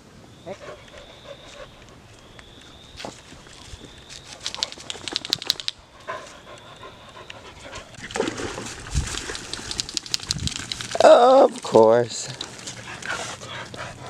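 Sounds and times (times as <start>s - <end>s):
quick clicks and rattles: 4.4s - 5.8s, 8.2s - 12.7s
dog panting: 4.4s - 8.2s, 12.3s - 14.0s.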